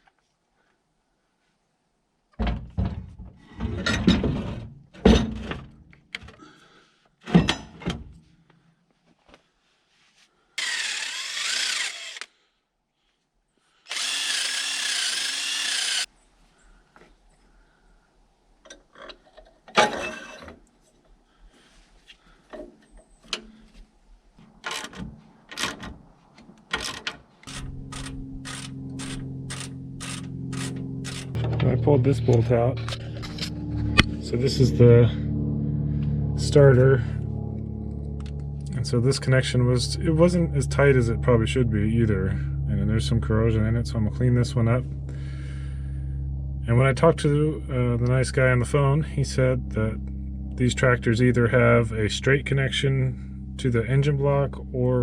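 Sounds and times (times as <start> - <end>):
tools clanking on metal: 7.2 - 8.2, 18.7 - 20.6
power drill whirring: 10.6 - 12.4, 13.9 - 16.1, 27.4 - 31.3
low steady hum: 27.4 - 55.0.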